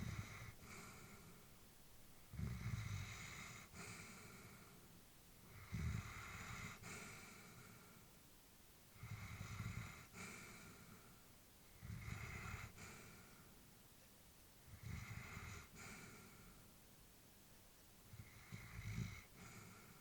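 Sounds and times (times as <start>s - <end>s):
dog breathing in sleep: 0.0s - 1.5s, 2.3s - 8.1s, 8.9s - 13.6s, 14.7s - 16.7s, 18.1s - 20.0s.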